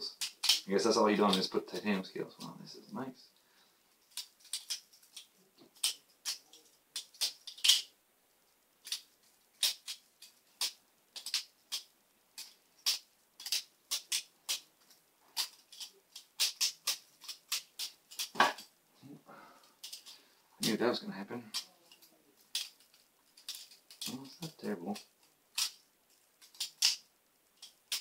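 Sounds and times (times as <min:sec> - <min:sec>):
butterfly knife clicking and clacking: 0:25.0 - 0:25.8, 0:26.4 - 0:27.0.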